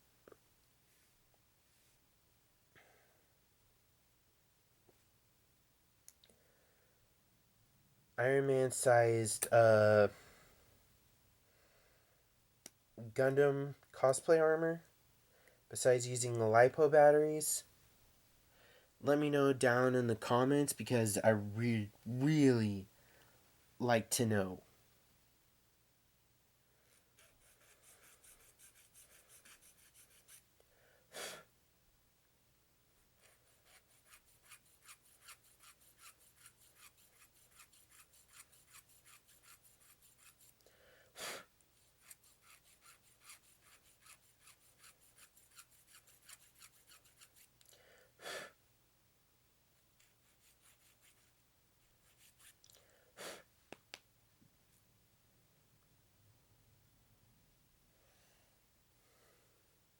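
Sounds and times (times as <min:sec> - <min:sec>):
puffs of breath: 0:18.5 - 0:19.0, 0:40.6 - 0:41.5
file rasping on plastic: 0:33.2 - 0:40.6, 0:41.8 - 0:47.5.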